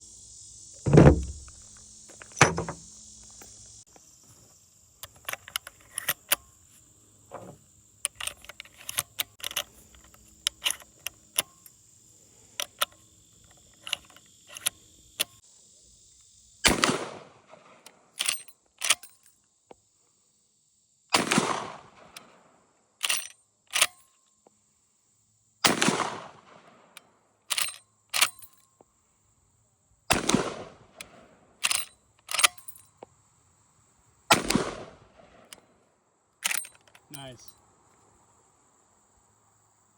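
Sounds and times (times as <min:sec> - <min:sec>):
metallic clicks of rifle action: 0:05.0 - 0:06.5, 0:07.3 - 0:11.7, 0:12.6 - 0:15.4, 0:17.7 - 0:19.4, 0:23.0 - 0:24.3, 0:26.9 - 0:28.7, 0:30.1 - 0:33.0, 0:36.4 - 0:37.6
airsoft rifle shots: 0:16.6 - 0:17.8, 0:21.2 - 0:22.2, 0:25.7 - 0:26.6, 0:30.1 - 0:31.2, 0:34.3 - 0:35.6.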